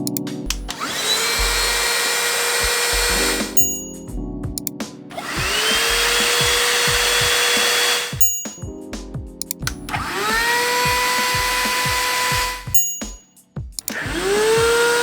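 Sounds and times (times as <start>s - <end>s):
background music with steady beat: 0.0s - 15.0s
handheld vacuum cleaner whine: 0.7s - 3.7s, 5.1s - 8.2s, 9.9s - 12.8s, 13.9s - 15.0s
higher-pitched vacuum cleaner running: 0.7s - 3.7s, 5.1s - 8.2s, 9.9s - 12.7s, 13.9s - 15.0s.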